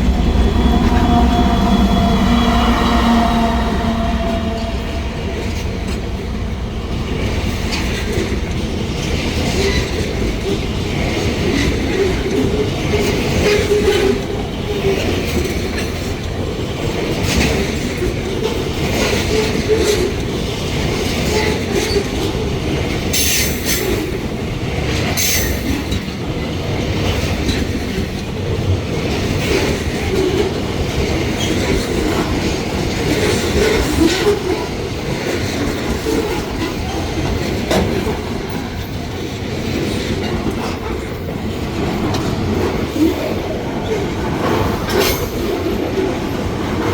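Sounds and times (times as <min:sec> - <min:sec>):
high wheel squeals: 0:00.0 - 0:06.4
train wheels rumbling on rails: 0:00.0 - 0:46.9.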